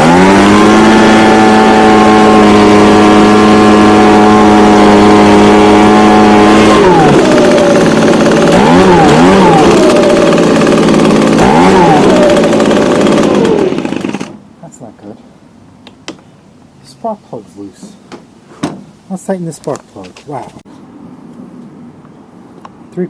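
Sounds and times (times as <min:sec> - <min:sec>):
leaf blower engine revving: 0:00.0 - 0:14.4.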